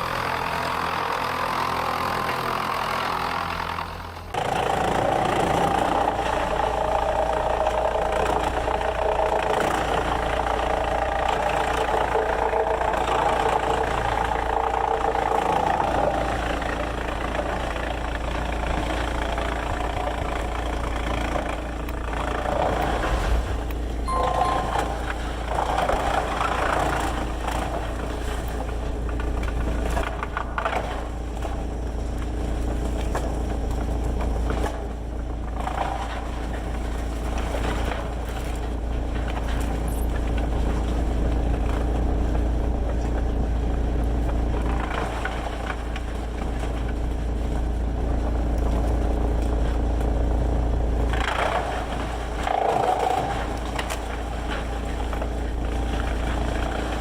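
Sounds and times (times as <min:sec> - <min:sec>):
sawmill machinery droning: 0:00.0 - 0:57.0
machinery scraping and grinding: 0:22.3 - 0:28.5.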